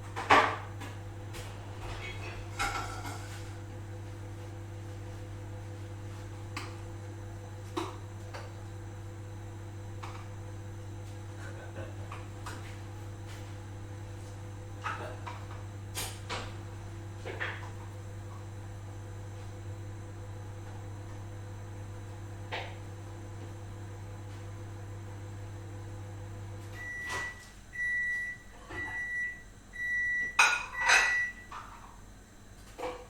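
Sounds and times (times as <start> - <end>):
microwave oven humming: 0.0 - 33.0
short beeps: 26.8 - 31.5.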